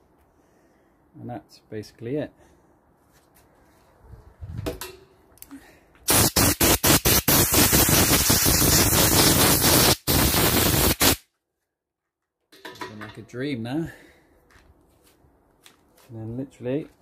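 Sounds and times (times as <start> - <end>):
hissing spray blasts: 6.0 - 11.2.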